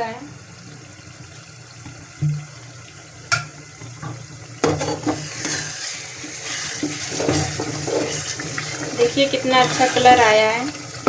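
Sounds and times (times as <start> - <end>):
food sizzling in hot oil: 0.0 - 11.0
spoon scraping pot: 4.7 - 10.4.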